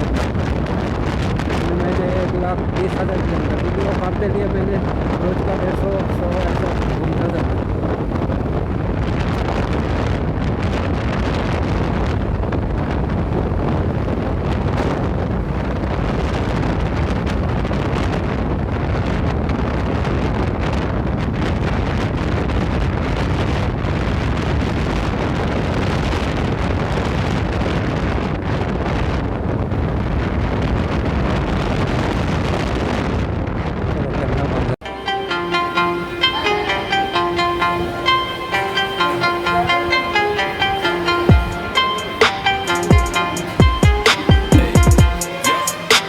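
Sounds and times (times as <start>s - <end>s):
wind buffeting microphone: 0.0s - 34.8s
road noise: 34.8s - 44.5s.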